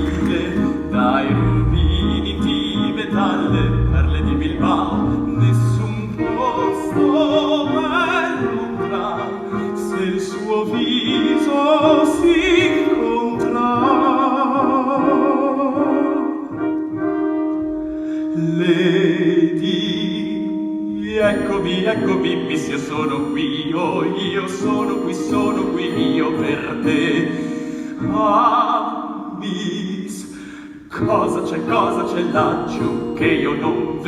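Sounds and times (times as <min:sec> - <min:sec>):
orchestral accompaniment: 0:00.0 - 0:19.4, 0:21.0 - 0:28.8
person singing with vibrato: 0:00.0 - 0:34.0.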